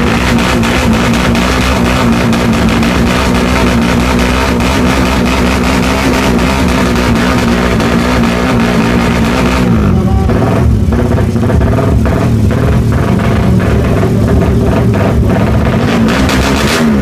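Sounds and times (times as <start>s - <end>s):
motorcycle engine running: 0.0s - 17.0s.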